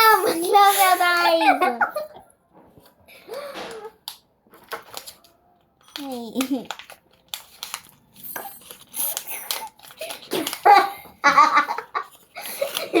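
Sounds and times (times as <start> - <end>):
children laughing and giggling: 0.0 - 2.3, 10.0 - 13.0
packaging rustling and crinkling: 4.5 - 11.2.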